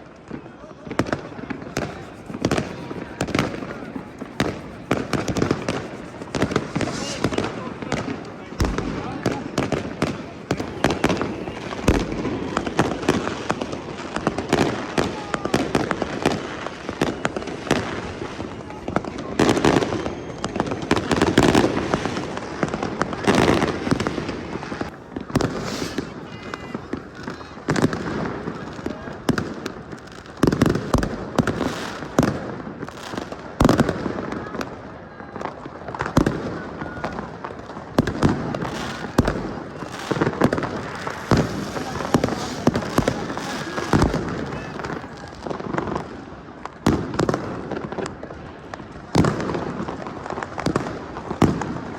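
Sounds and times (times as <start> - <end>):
fireworks bangs and cracks: 0.0 - 51.9
fireworks crackling: 0.0 - 51.9
deep firework boom: 0.9 - 13.6, 25.1 - 28.3, 38.0 - 45.2.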